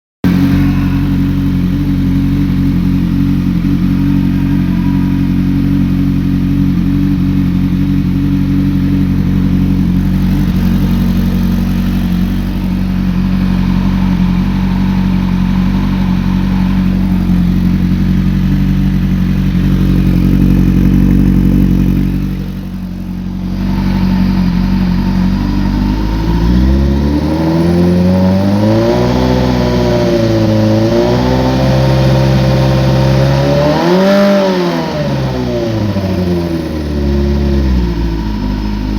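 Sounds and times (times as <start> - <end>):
engine revving with throttle blips: 0.2 - 38.9
motorcycle engine idling: 0.2 - 38.9.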